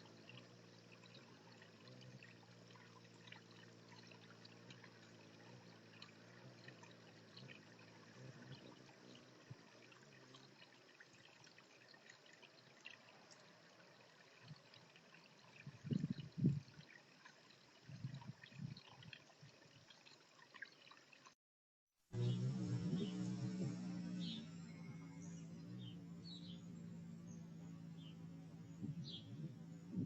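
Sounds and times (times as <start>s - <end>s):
low steady hum: 0.0s - 19.9s, 22.1s - 30.0s
small high ticks and splashes: 0.0s - 21.4s
trickling water: 0.0s - 21.4s.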